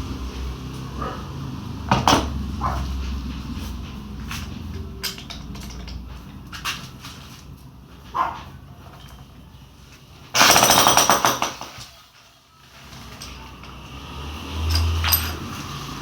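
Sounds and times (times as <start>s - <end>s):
jackhammer hammering concrete: 1.9s - 2.4s, 10.4s - 11.9s.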